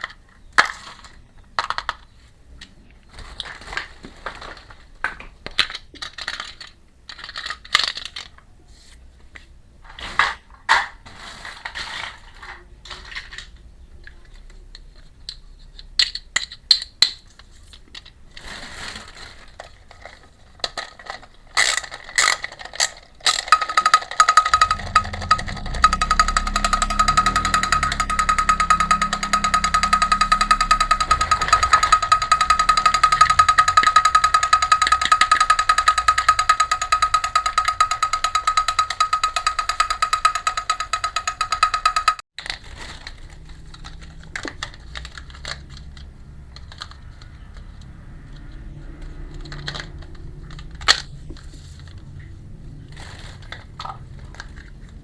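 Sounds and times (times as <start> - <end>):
plastic toy pieces being handled: 0.0 - 2.3, 3.0 - 8.5, 9.8 - 24.6, 42.4 - 47.7, 49.0 - 52.3, 52.9 - 55.0
buzzing tone with fast rattle: 23.3 - 42.2.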